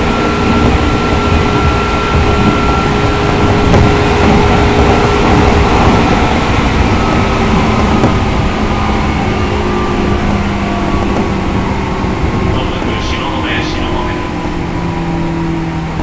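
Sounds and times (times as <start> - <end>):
electric train rumbling: 0.0 - 16.0
faint whining tones: 0.0 - 16.0.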